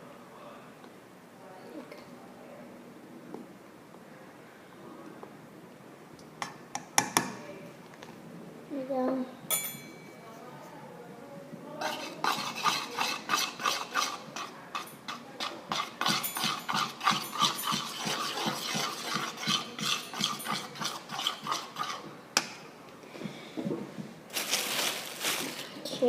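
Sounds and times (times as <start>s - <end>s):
spoon stirring in a bowl: 11.8s - 22.6s.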